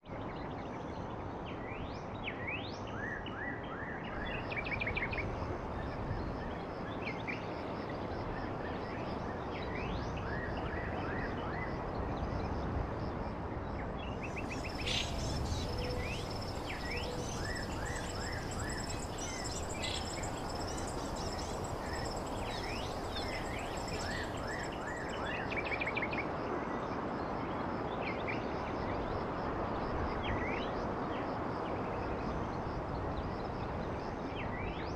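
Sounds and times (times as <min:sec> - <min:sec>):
outdoor background noise: 0:00.0 - 0:34.9
high falling bird chirps: 0:14.3 - 0:25.2.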